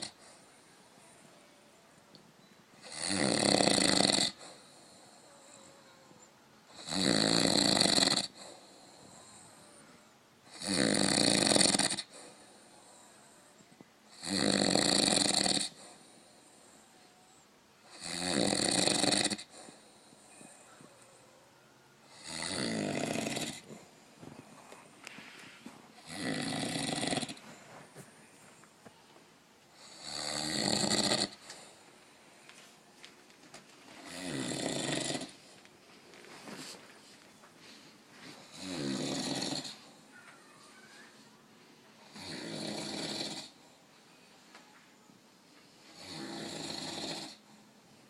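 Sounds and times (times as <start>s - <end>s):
quiet breathing: 0.0s - 2.9s, 4.3s - 6.8s, 8.3s - 10.6s, 12.0s - 14.2s, 15.7s - 18.0s, 19.4s - 30.1s, 31.1s - 48.0s
man snoring: 2.8s - 5.0s, 6.7s - 9.4s, 10.5s - 12.3s, 14.1s - 15.8s, 17.9s - 19.6s, 22.1s - 23.8s, 26.0s - 27.4s, 29.8s - 31.6s, 34.0s - 35.4s, 38.4s - 39.8s, 42.1s - 43.6s, 45.9s - 47.4s.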